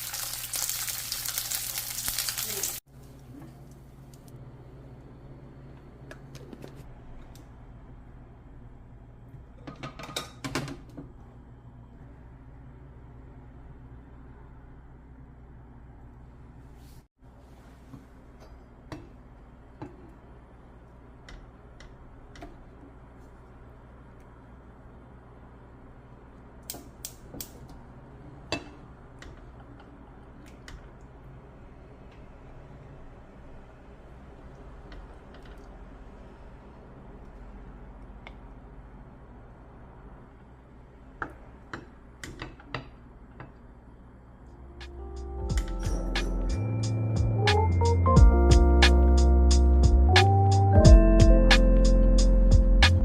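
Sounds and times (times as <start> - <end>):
low steady hum: 2.4 - 53.0
low hum: 44.4 - 53.0.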